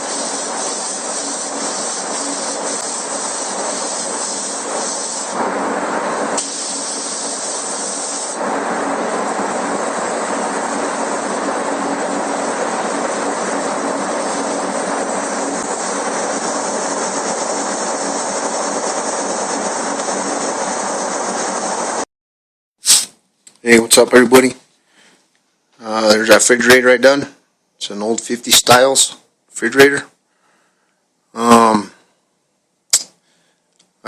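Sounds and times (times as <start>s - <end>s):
spray gun hissing: 0.0s - 22.0s.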